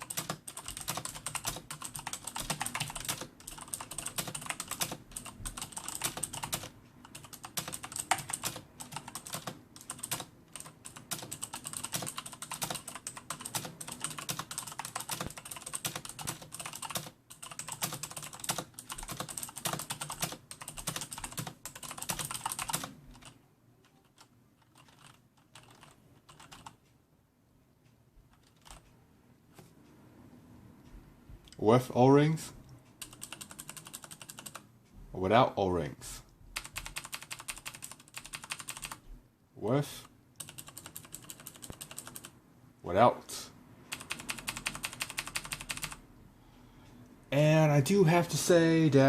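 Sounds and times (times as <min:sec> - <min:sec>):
typing on clicky mechanical keyboard: 0:00.0 - 0:26.8, 0:28.3 - 0:28.8, 0:33.0 - 0:34.6, 0:36.6 - 0:39.0, 0:40.4 - 0:42.3, 0:43.9 - 0:46.0.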